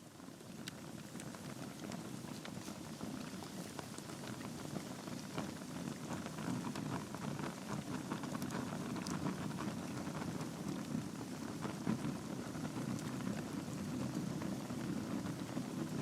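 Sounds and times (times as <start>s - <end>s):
fire crackling and popping: 0.0s - 16.0s.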